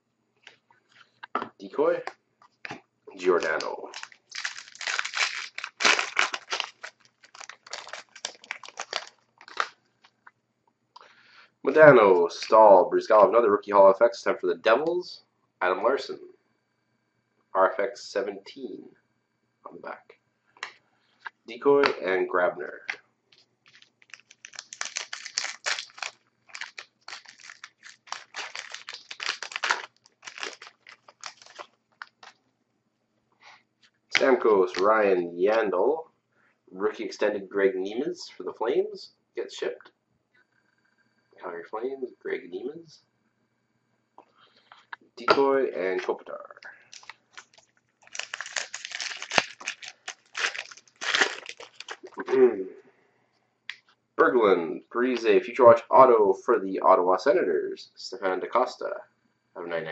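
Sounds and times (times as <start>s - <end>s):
cards rustling: 3.2s - 9.7s, 23.7s - 32.4s, 46.8s - 52.4s
wrapper crinkling: 3.2s - 9.8s, 23.6s - 32.4s, 46.8s - 52.3s.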